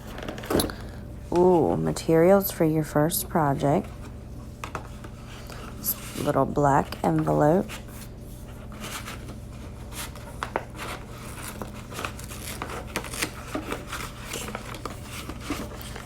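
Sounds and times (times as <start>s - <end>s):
envelope rustling and crinkling: 3.8s - 16.0s.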